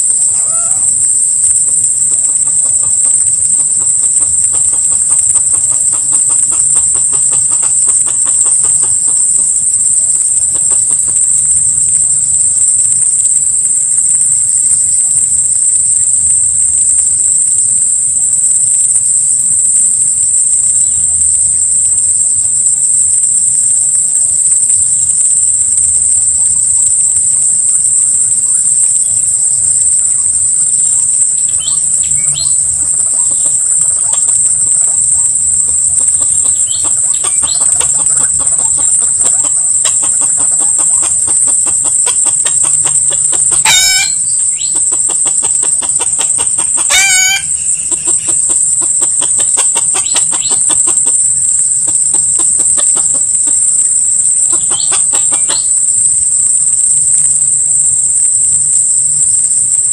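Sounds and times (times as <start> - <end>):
junglefowl calls: 0.0 - 11.2, 31.2 - 53.6, 54.4 - 55.8
high-pitched insect drone: 0.0 - 59.9
bird chirps: 27.9 - 56.2.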